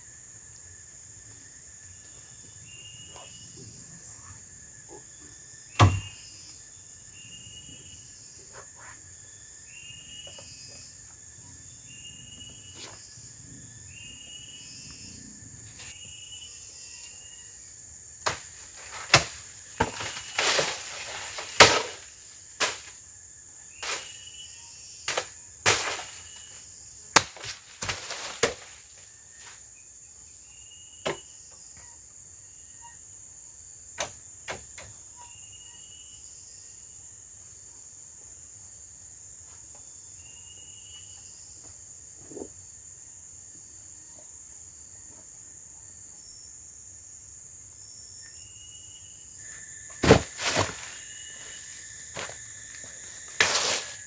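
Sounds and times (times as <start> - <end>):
high insect drone: 0.0 - 54.0
sharp knocks and cracks: 5.8 - 6.1, 18.2 - 22.0, 25.1 - 26.2, 27.1 - 28.8, 50.0 - 50.8.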